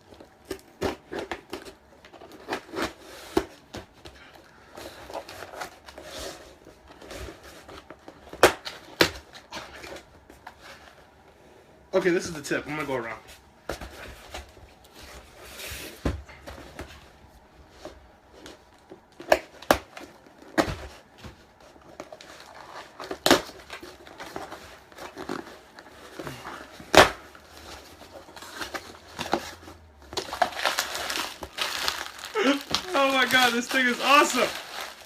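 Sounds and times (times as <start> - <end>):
packaging rustling: 17.8 - 35.0.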